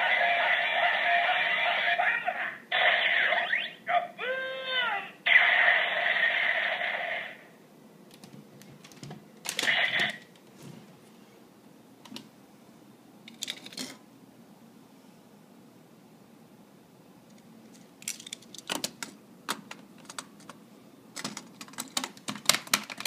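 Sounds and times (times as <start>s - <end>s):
toy gun electronic sound effects: 2.7s - 3.8s, 9.6s - 10.2s
plastic clicks from handling toy: 17.3s - 20.6s.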